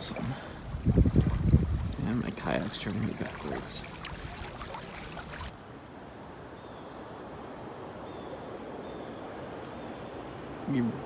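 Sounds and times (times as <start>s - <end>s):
creek water flowing: 0.0s - 5.6s
paddle splashes: 0.0s - 5.6s.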